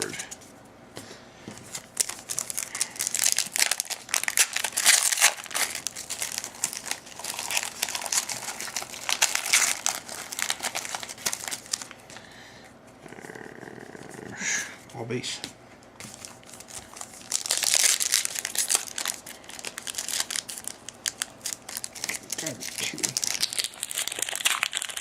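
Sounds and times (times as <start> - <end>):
wrapper crinkling: 1.6 - 12.2, 16.1 - 25.0.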